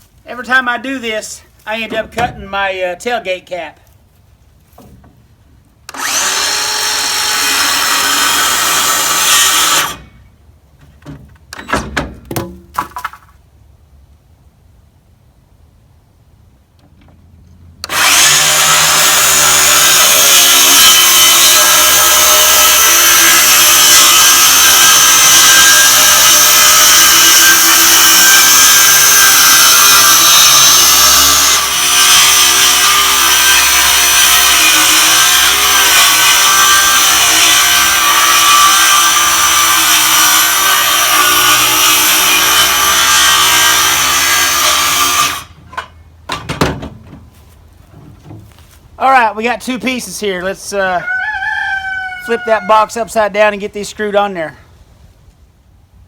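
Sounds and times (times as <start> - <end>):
power saw cutting wood: 5.9 - 10.2, 17.8 - 45.9.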